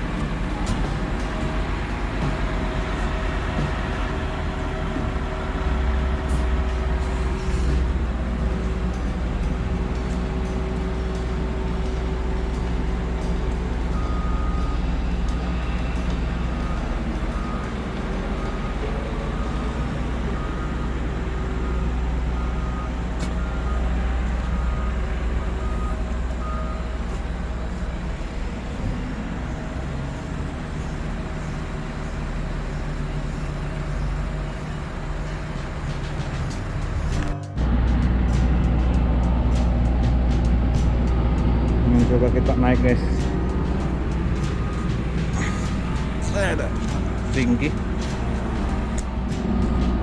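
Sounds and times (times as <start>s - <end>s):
heavy diesel machinery droning: 0.0s - 50.0s
reversing alarm beeping: 2.0s - 27.2s, 41.0s - 50.0s.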